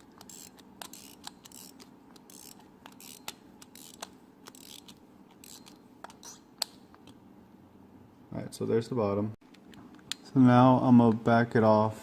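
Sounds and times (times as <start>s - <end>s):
screwdriver clicks and scraping: 0.0s - 7.2s.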